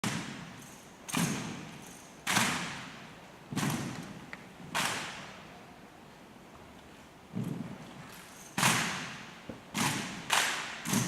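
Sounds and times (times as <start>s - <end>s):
rifle thuds echoing in a room: 0.0s - 5.4s, 8.6s - 11.0s.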